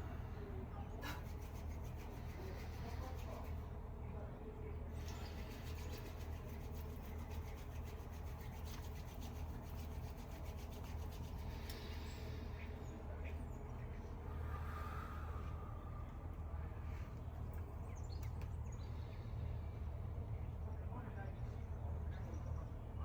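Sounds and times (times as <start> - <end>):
steady low hum: 0.0 - 23.0
fast repeating rubbing: 5.3 - 11.6.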